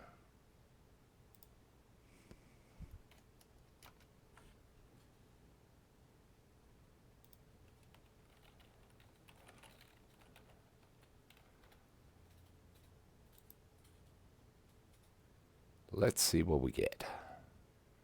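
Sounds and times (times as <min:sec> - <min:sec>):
faint keyboard typing: 0:01.3 - 0:01.6, 0:02.9 - 0:05.1, 0:07.2 - 0:15.2.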